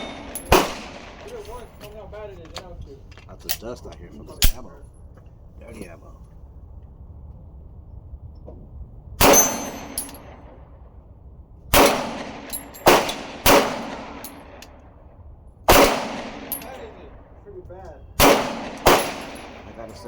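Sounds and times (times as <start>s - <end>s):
pistol shots: 0.0s - 1.8s, 4.4s - 4.7s, 9.2s - 10.5s, 11.7s - 14.7s, 15.7s - 17.1s, 18.2s - 20.0s
bullets pinging on steel targets: 0.0s - 2.0s, 9.2s - 10.6s, 11.8s - 14.8s, 15.7s - 17.2s, 18.1s - 20.0s.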